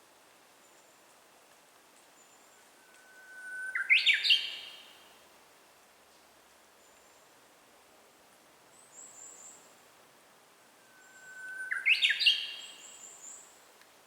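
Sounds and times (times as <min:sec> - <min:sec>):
faint high bird chirps: 0:02.2 - 0:05.0, 0:10.9 - 0:13.5
warbler whistled song: 0:02.2 - 0:05.1, 0:10.8 - 0:13.6.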